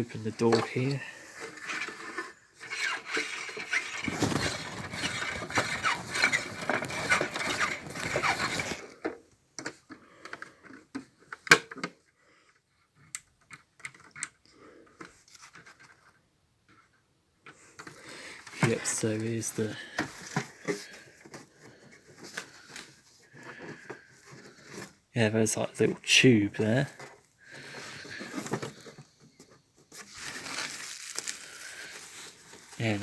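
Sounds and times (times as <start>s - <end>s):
plastic toy scraping and rustling: 0.0s - 11.4s, 17.5s - 25.0s, 26.6s - 33.0s.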